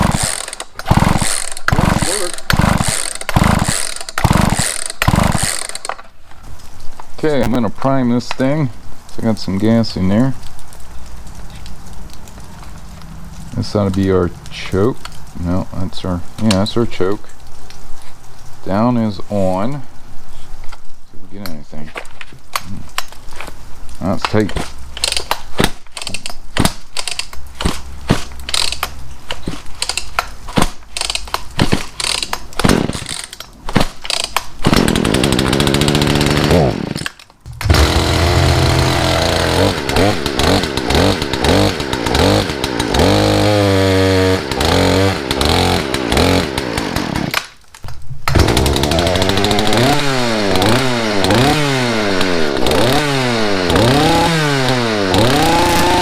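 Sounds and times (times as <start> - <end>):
chainsaw engine sputtering and revving: 0.0 - 5.9, 34.6 - 47.4, 48.3 - 56.0.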